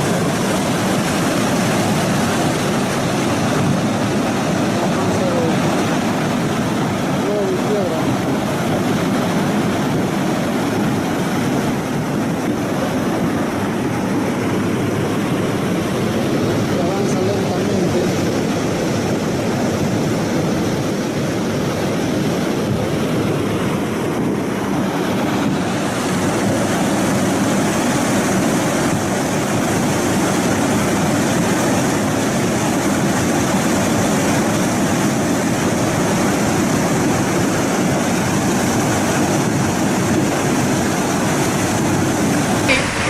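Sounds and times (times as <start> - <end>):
loud rushing noise: 42.3 - 43.0.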